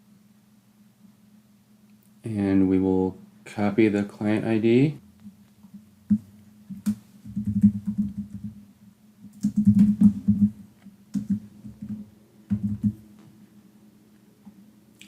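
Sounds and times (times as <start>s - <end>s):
keyboard keys clicking: 6.1s - 8.6s, 9.3s - 13.0s.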